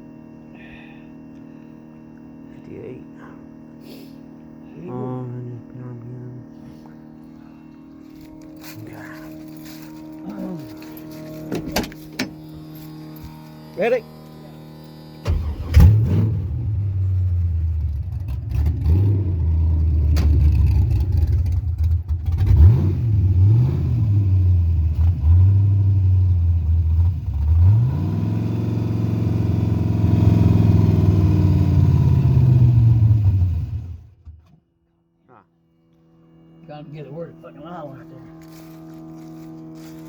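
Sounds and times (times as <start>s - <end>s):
car engine starting and revving: 14.6s - 34.5s.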